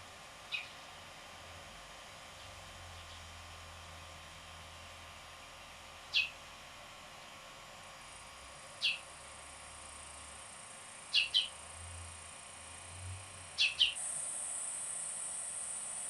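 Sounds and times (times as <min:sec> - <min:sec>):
steady high hiss: 0:12.9 - 0:16.0.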